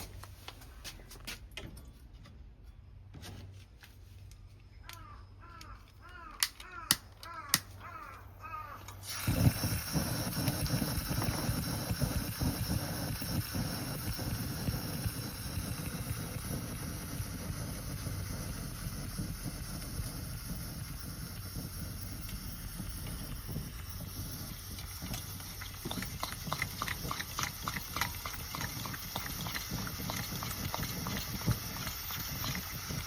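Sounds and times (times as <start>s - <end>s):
burner flame roaring: 8.9s - 33.0s.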